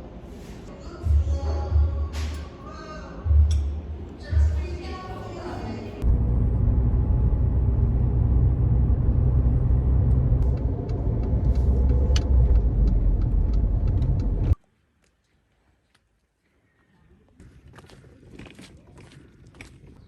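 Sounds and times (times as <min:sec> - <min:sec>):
low vehicle rumble: 0:00.0 - 0:14.6.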